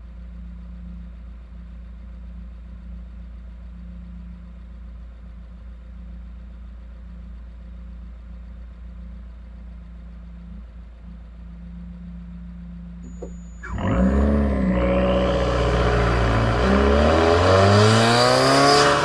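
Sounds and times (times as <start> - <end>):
car engine running: 0.8 - 19.0.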